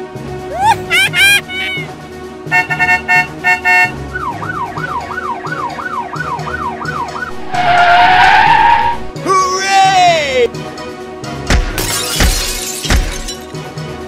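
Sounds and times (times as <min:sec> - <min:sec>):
siren yelping wail: 0:04.4 - 0:09.2.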